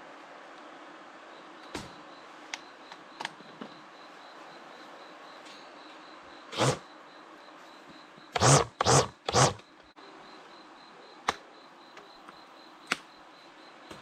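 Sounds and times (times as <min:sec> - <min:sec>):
string trimmer running: 0:06.6 - 0:06.8, 0:08.4 - 0:09.6.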